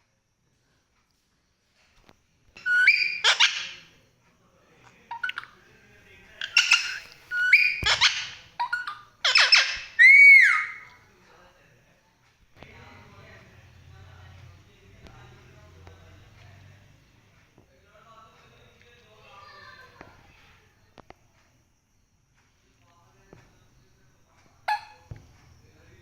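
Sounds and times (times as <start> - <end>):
parrot squawking and whistling: 2.6 - 3.8, 6.4 - 10.9, 24.7 - 25.1.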